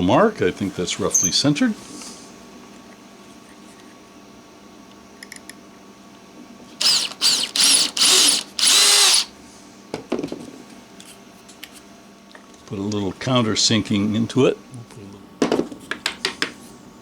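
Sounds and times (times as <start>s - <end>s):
small electric drill whine: 6.8s - 9.3s.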